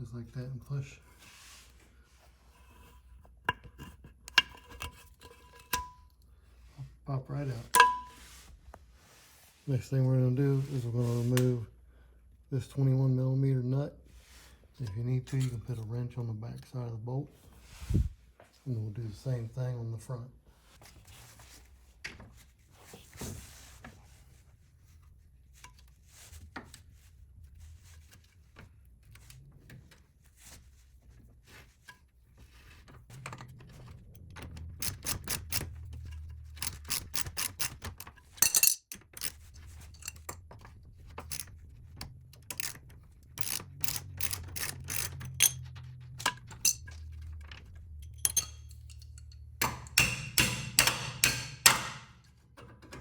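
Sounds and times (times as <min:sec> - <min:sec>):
metal clinks: 0:07.8 - 0:08.2, 0:38.4 - 0:40.4, 0:43.4 - 0:47.2, 0:47.9 - 0:52.0
ratchet wrench clicking: 0:34.8 - 0:35.8, 0:36.5 - 0:40.4, 0:41.2 - 0:41.5, 0:42.5 - 0:46.8, 0:48.0 - 0:52.0.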